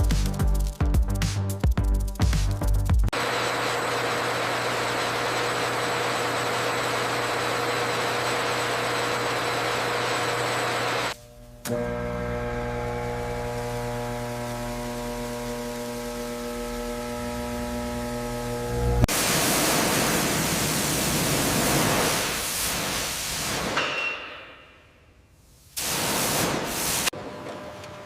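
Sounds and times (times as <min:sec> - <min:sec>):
steady machine hum: 0:03.2 - 0:20.2
loud even hiss: 0:19.1 - 0:23.8, 0:25.4 - 0:27.1.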